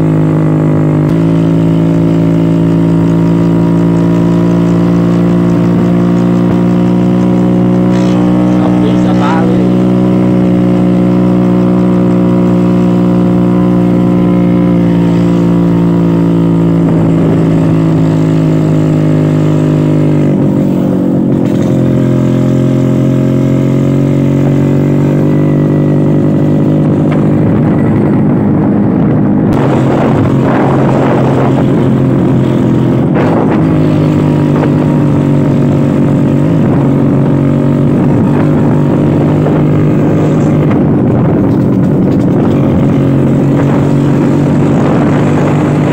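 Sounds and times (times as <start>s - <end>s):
scooter engine droning: 0.0s - 45.9s.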